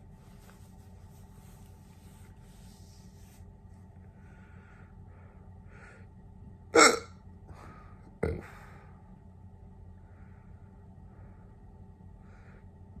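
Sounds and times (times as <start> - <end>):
faint breaths: 1.2 - 6.3, 7.4 - 13.0
loud hiccup: 6.8 - 7.1.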